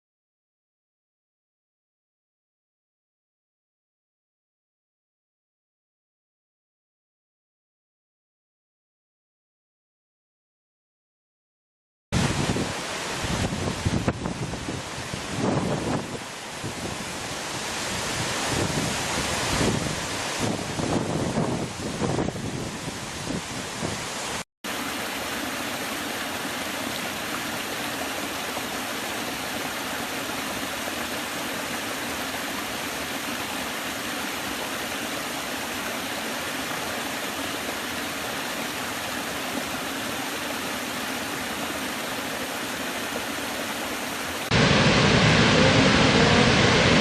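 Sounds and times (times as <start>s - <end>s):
waterfall rushing: 12.2s - 47.0s.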